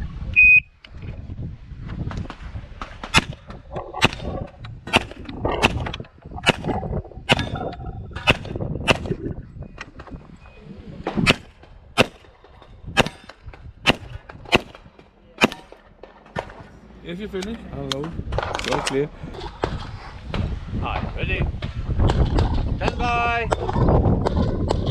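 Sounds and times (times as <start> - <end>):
pistol shots: 4.9 - 6.7, 11.2 - 16.6.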